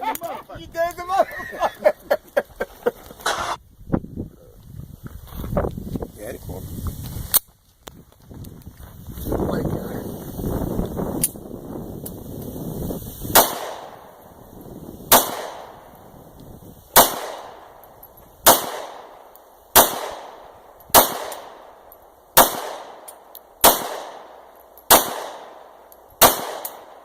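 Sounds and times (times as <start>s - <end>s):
gunshots with echo: 13.4s - 14.1s, 15.1s - 15.9s, 17.0s - 17.8s, 18.4s - 19.2s, 19.8s - 21.7s, 22.4s - 27.0s.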